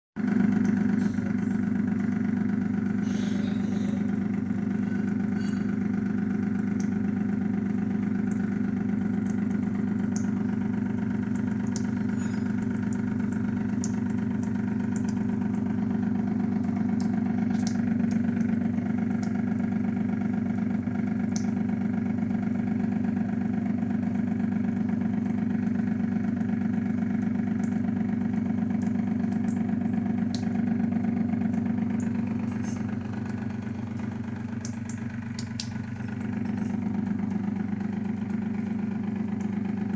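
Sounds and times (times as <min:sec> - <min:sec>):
water purifier pump buzzing hum: 0:00.2 - 0:39.9.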